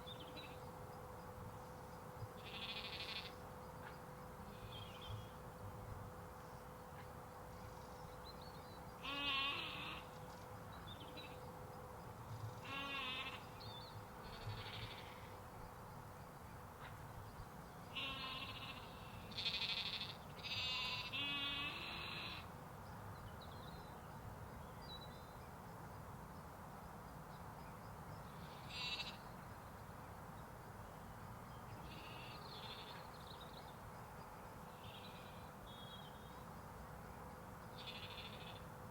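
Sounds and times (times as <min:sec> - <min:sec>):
low outdoor background hiss: 0:00.0 - 0:38.9
sheep and lambs bleating: 0:02.4 - 0:03.4, 0:09.0 - 0:10.0, 0:12.6 - 0:13.4, 0:14.2 - 0:15.4, 0:17.9 - 0:22.5, 0:28.5 - 0:29.2, 0:31.8 - 0:33.0, 0:37.8 - 0:38.6.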